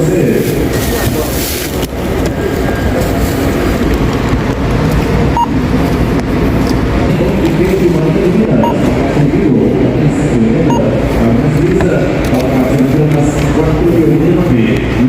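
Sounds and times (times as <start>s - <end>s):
low rumble of store noise: 0.0s - 15.0s
short scanner beep: 5.4s - 5.6s, 8.6s - 8.8s.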